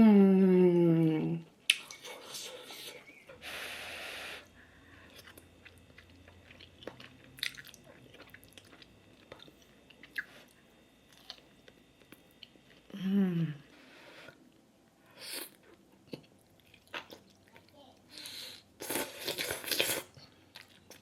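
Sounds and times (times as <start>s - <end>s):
chewing fried food: 5.0s - 12.9s, 15.6s - 18.0s, 18.8s - 21.0s.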